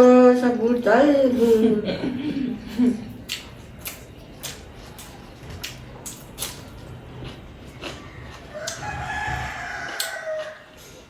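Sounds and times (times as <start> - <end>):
chewing clicks and smacks: 3.1 - 11.0
rooster crowing: 8.5 - 11.0.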